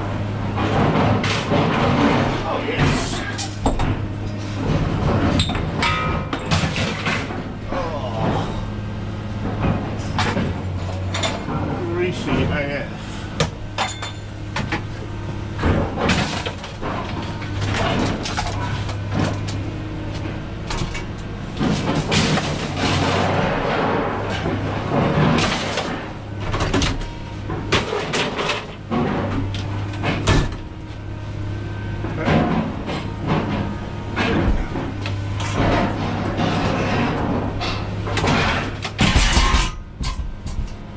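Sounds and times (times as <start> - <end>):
knocking and clattering: 32.2 - 40.8.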